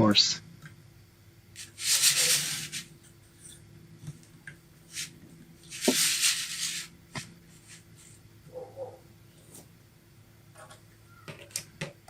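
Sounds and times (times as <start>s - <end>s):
loud scraping rustle: 1.6s - 2.9s, 4.9s - 8.2s.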